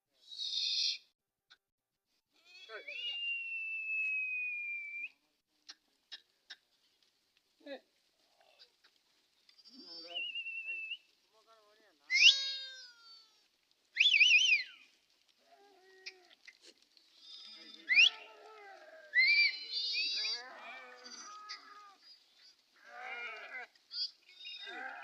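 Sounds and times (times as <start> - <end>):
sheep bleating: 12.1 - 13.4, 17.2 - 22.0, 22.8 - 25.0.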